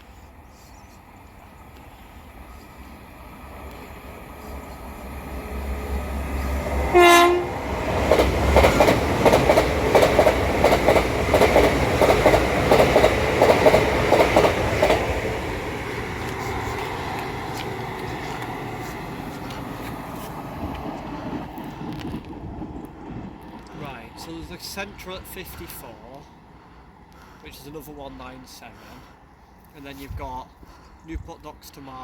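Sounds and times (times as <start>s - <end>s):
train wheels clicking over rail joints: 4.8s - 22.4s
train horn blast: 6.8s - 7.8s.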